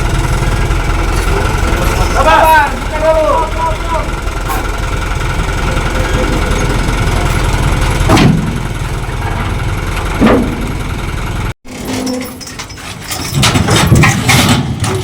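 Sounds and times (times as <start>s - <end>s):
engine running: 0.0s - 11.8s
loud metallic knocks: 5.9s - 11.0s.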